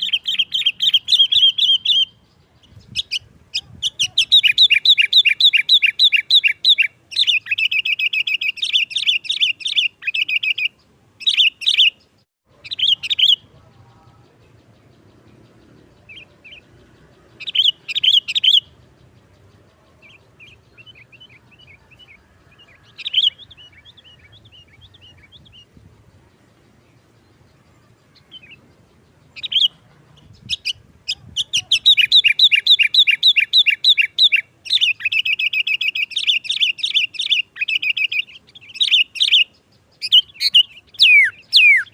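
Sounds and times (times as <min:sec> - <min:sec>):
bulbul chirping: 0:00.0 - 0:13.5, 0:14.6 - 0:18.8, 0:29.4 - 0:41.9.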